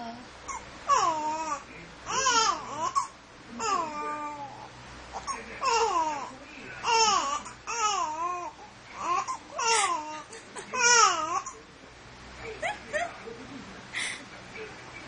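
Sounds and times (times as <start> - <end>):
baby babbling: 0.5 - 10.2.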